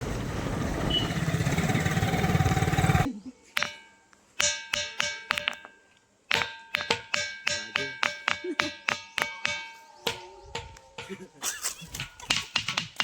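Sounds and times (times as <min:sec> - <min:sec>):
ringing stone struck: 0:03.6 - 0:11.3.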